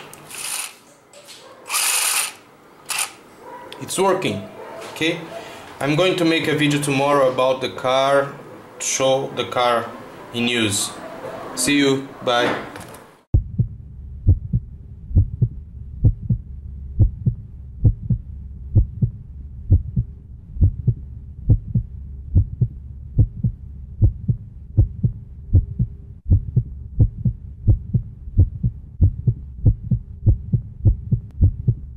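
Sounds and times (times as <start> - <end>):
constant low hum: 13.3 - 31.9
low heartbeat-like thumping: 13.3 - 31.9.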